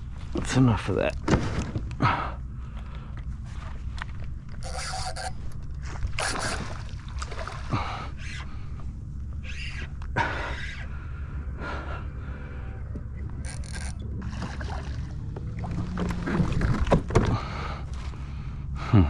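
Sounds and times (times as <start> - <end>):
steady low rumble: 0.0 - 19.0
water splashes: 6.2 - 8.0, 14.2 - 16.9
hard breathing: 10.2 - 13.1, 17.3 - 19.0.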